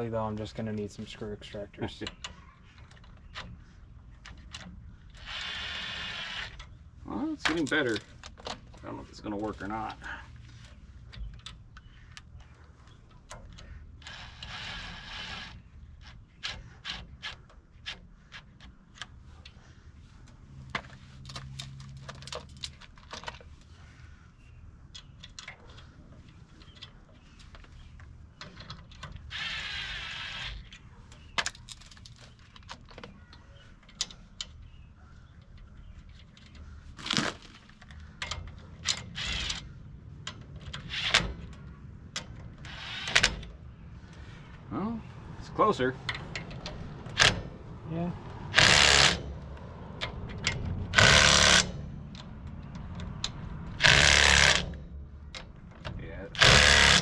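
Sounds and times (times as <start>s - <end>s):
rasping bursts: 5.1s - 6.7s, 13.4s - 19.3s, 29.2s - 30.8s, 42.6s - 44.6s, 47.0s - 55.2s, 56.2s - 57.0s
metal clinks and knocks: 20.6s - 23.7s.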